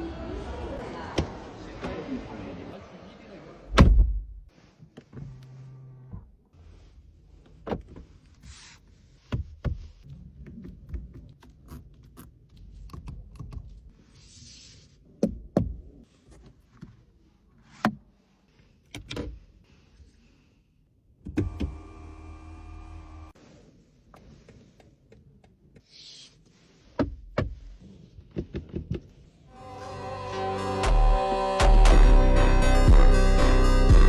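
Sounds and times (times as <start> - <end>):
power window motors: 5.2 - 6.2, 21.4 - 23.3.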